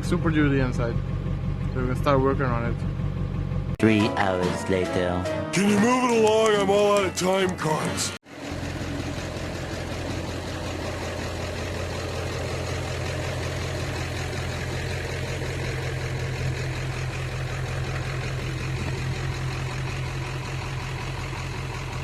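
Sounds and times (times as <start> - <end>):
vehicle engine running: 0.0 - 3.8, 5.8 - 22.0.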